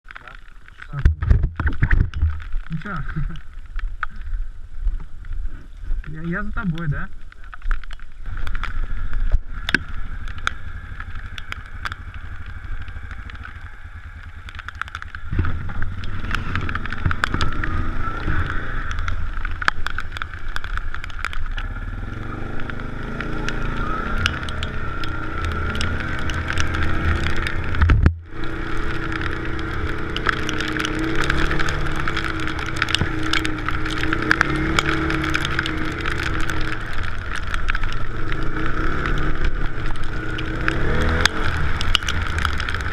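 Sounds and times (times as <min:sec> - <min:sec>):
rain ticking: 0:00.0 - 0:42.9
quad bike engine running: 0:08.6 - 0:42.9.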